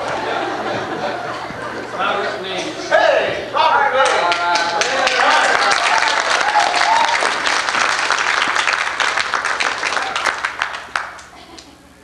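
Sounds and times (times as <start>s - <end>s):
audience applauding: 4.0s - 11.7s.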